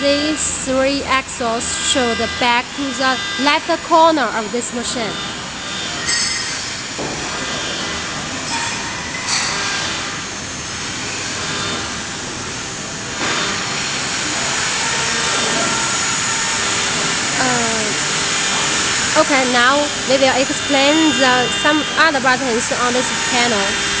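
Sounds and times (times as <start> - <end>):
cnc router axis drives whirring: 0.0 - 24.0.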